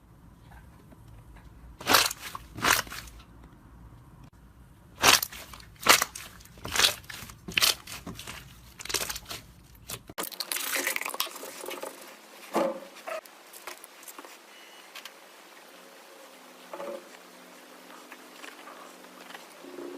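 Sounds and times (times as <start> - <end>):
slime squishing and crackling: 1.8 - 3.2, 5.0 - 12.1.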